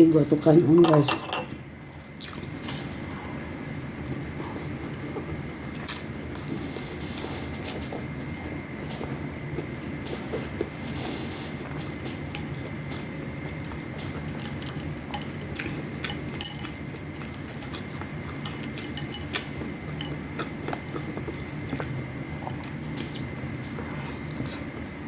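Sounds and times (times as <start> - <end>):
steady low hum: 0.0 - 25.0
cutlery clicking on a plate: 0.8 - 1.6, 14.3 - 16.8, 18.4 - 20.2.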